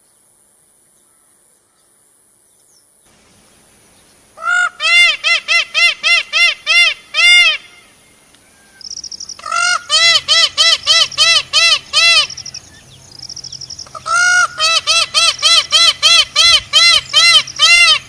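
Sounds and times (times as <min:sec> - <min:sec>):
peacock calling loudly: 0:04.4 - 0:18.0.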